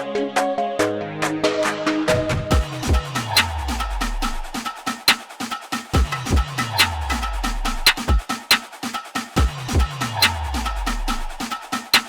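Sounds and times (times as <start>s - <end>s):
electronic music with synths: 0.0s - 5.1s.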